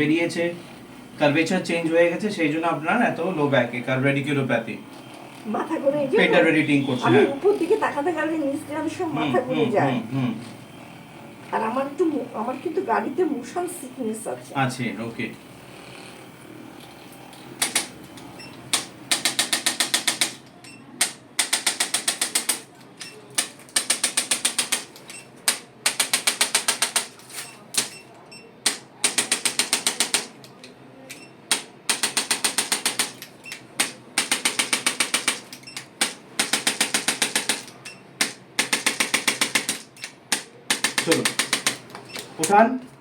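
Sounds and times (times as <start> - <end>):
rapid mechanical clicks: 17.6 - 28.0, 28.6 - 30.7, 31.5 - 42.6.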